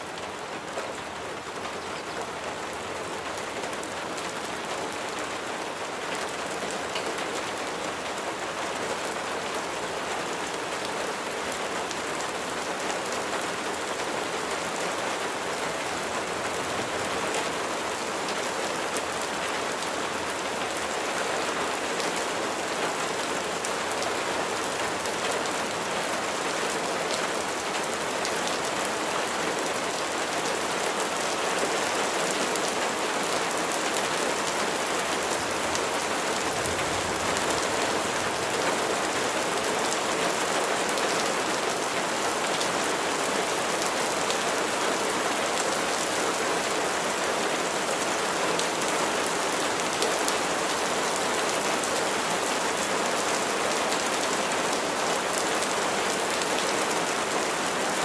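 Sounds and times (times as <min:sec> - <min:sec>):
steady rain hiss: 0:00.0 - 0:58.0
raindrops pattering: 0:32.6 - 0:44.4.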